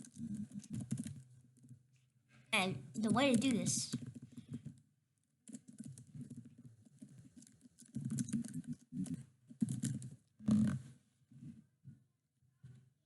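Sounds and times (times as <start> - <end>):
computer keyboard typing: 0.0 - 1.8, 2.9 - 4.3, 5.5 - 10.2.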